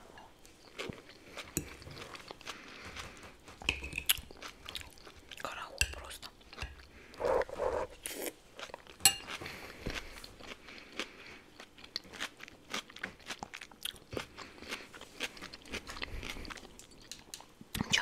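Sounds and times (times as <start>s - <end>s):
chewing crunchy food: 0.0s - 18.0s.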